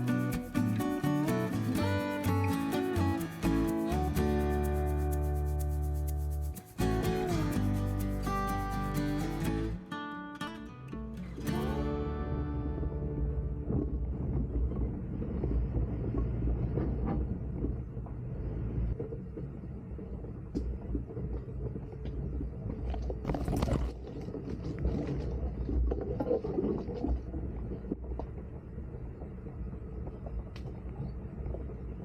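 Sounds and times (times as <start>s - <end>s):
car engine and road rumble: 11.5s - 21.1s.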